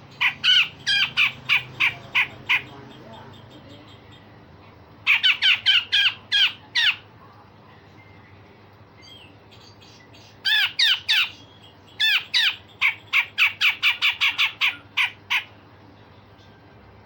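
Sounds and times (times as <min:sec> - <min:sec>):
bulbul calling: 0:00.0 - 0:04.4, 0:05.0 - 0:07.1, 0:09.0 - 0:15.6.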